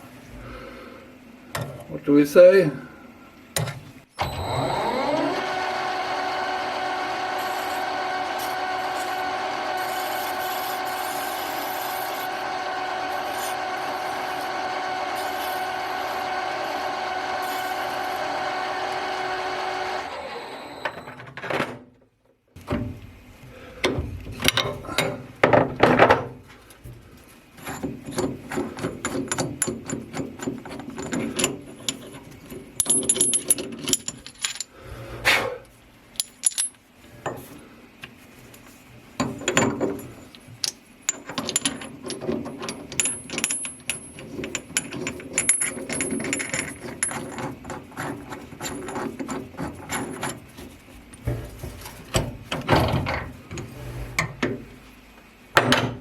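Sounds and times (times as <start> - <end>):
metal lathe spindle whining: 4.2 - 21.2
metallic clinks and scrapes: 39.9 - 51.2.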